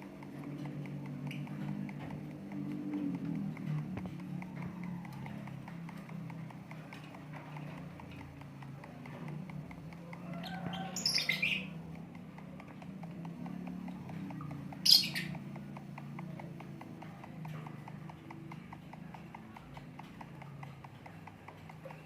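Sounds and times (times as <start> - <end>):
faint rapid ticking: 0.0 - 22.0
lovebirds squawking: 10.4 - 11.8, 14.8 - 15.4.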